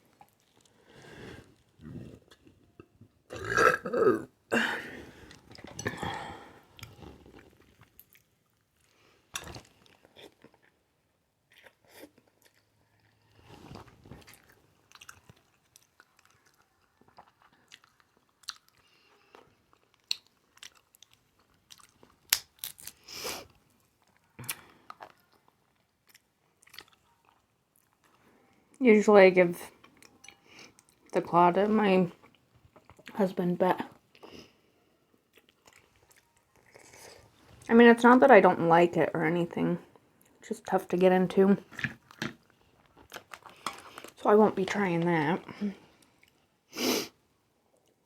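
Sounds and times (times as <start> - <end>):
loud burps: 3.3 - 4.9
food crunching: 5.1 - 28.3, 35.3 - 37.7, 41.6 - 44.2
close-miked chewing with wet smacks: 13.8 - 22.5, 24.0 - 28.2, 35.3 - 37.4.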